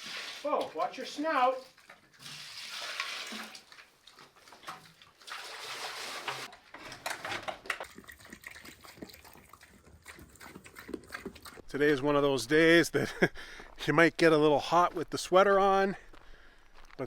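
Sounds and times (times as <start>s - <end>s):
small splashes: 0.0s - 6.5s
water pouring into trough: 0.0s - 6.6s, 7.8s - 11.6s.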